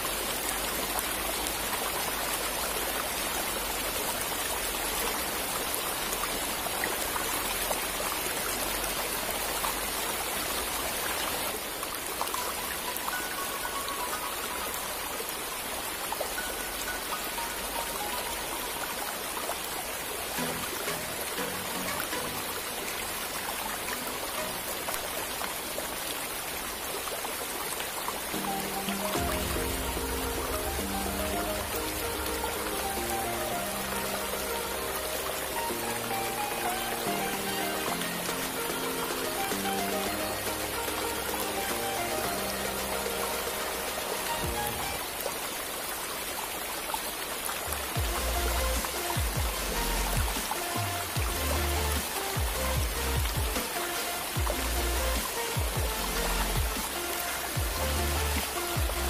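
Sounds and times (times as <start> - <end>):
river water flowing: 0.0 - 59.0
faint music: 0.1 - 26.2, 28.0 - 45.3.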